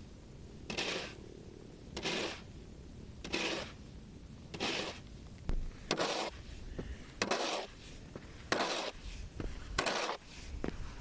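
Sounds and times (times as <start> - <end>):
snow shovel scraping: 0.7 - 1.2, 2.0 - 2.5, 3.2 - 3.8, 4.5 - 5.0, 5.8 - 11.0.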